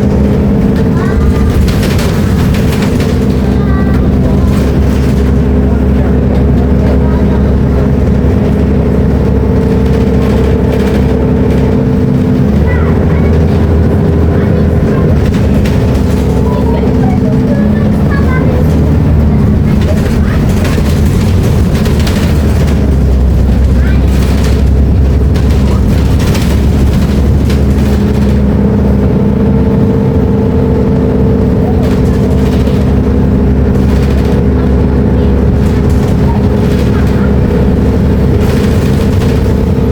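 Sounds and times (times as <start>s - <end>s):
bus diesel engine running: 0.0s - 39.9s
short knocks or rattles: 18.6s - 29.1s, 31.8s - 39.9s.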